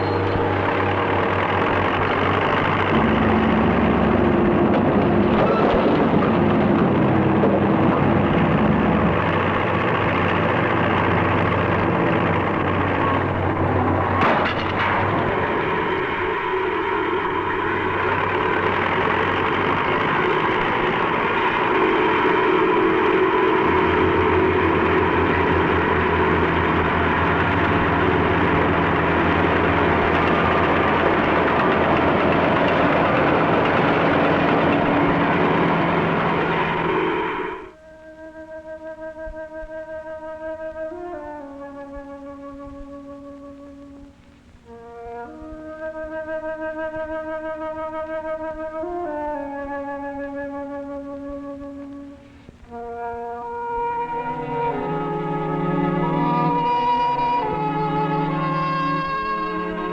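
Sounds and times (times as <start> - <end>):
short clatter: 0.0 - 22.5
heavy engine running: 0.0 - 59.9
heavy machinery humming: 0.0 - 59.9.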